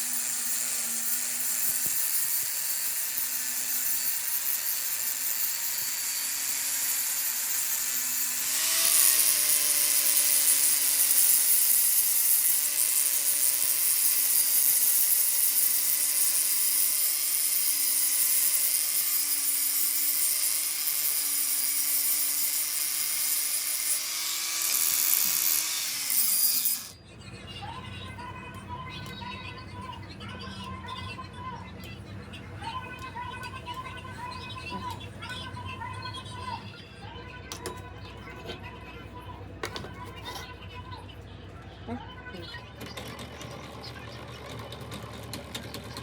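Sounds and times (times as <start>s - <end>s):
grinding on steel: 0.0s - 27.0s
power tool motor whine: 0.0s - 27.0s.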